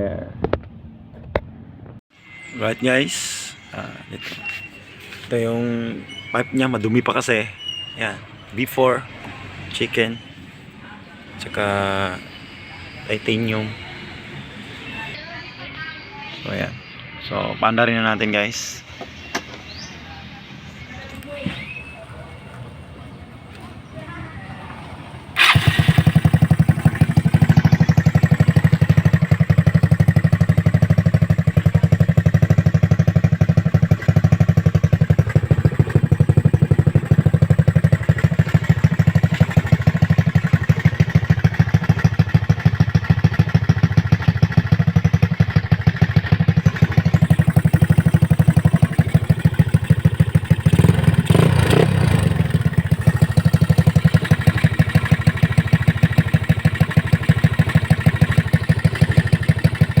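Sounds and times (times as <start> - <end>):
scooter engine running loud: 21.5 - 60.0.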